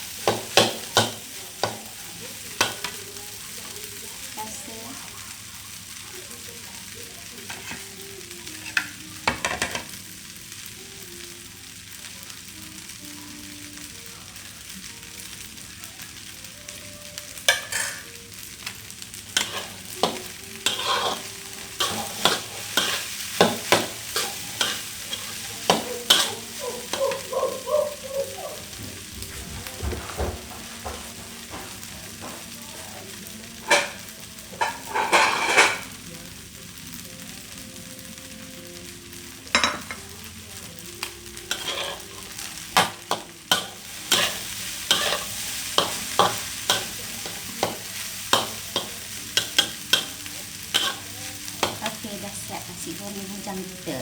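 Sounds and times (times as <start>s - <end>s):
rice sizzling in a pan: 0.0s - 54.0s
spatula scraping against pan: 7.4s - 8.9s, 19.2s - 27.7s, 34.6s - 35.8s, 41.4s - 52.0s.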